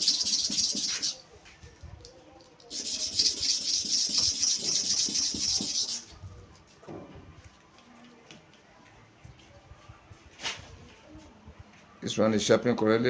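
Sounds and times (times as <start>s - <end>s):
blade scraping on sharpening stone: 0.0s - 1.2s, 2.7s - 6.2s.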